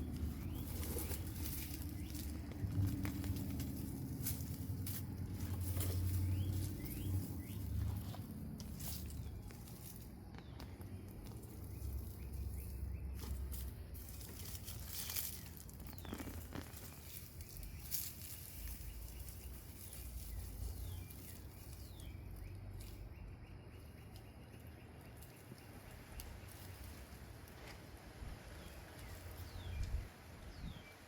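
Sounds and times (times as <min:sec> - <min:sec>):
hands digging through soil: 0:00.0 - 0:23.2.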